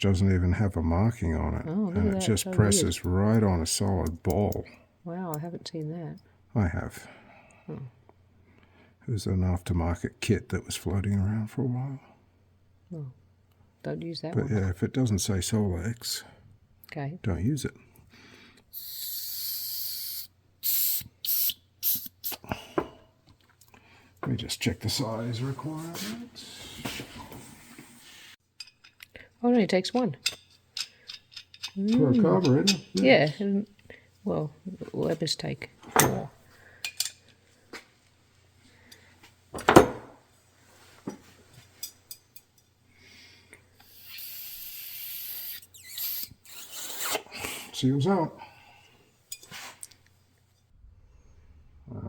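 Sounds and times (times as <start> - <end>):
pressurised spray hissing: 18.7 - 22.4, 43.8 - 47.3
light clicks of tools: 30.2 - 31.8
knock on workbench: 39.6 - 40.2.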